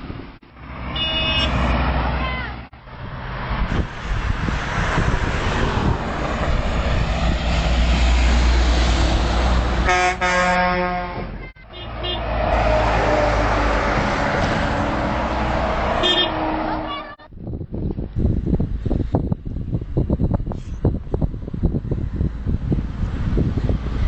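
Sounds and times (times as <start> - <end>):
heavy truck engine rumble: 0.0 - 24.0
traffic noise: 0.0 - 24.0
truck horn: 0.9 - 1.7, 9.8 - 12.4, 15.8 - 17.3.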